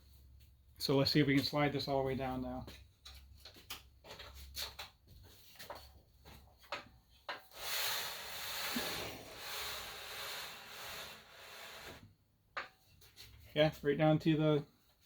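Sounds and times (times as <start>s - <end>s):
brackets scraping along rail: 7.5s - 12.1s.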